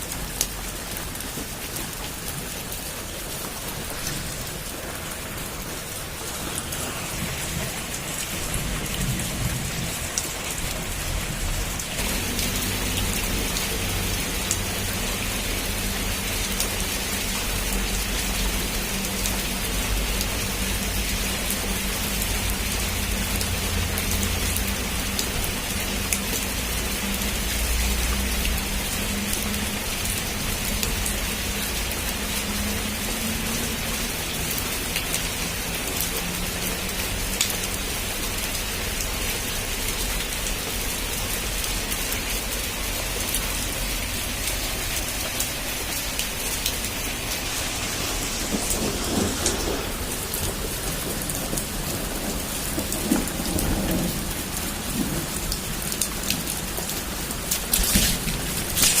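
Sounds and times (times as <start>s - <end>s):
heavy rain: 0.0s - 59.0s
thunder rumble: 3.4s - 15.9s, 45.6s - 55.6s.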